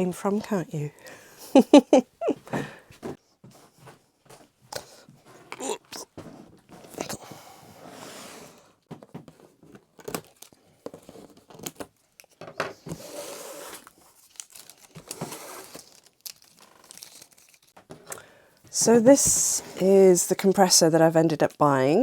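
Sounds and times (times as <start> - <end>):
packaging tearing and crumpling: 10.0 - 10.6, 13.7 - 17.8.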